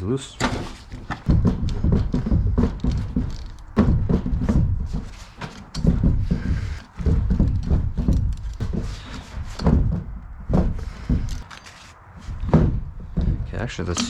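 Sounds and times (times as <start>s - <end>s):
metal knocks and clicks of tools: 12.4s - 14.0s.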